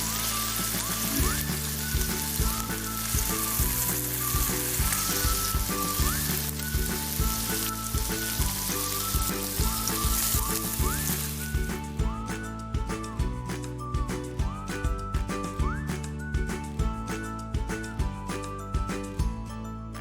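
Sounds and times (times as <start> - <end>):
food sizzling in oil: 0.0 - 11.6
background music with beat: 0.0 - 20.0.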